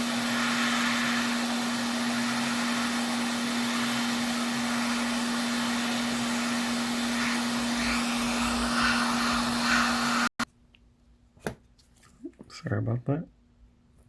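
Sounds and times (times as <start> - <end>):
hot air blower hissing: 0.0 - 10.4
steady hum: 0.0 - 10.4.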